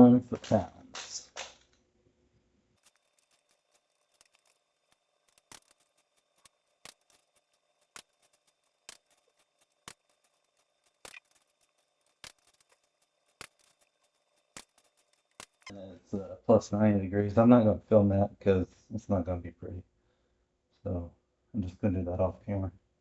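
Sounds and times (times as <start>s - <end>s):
wrench clicking: 2.8s - 15.7s.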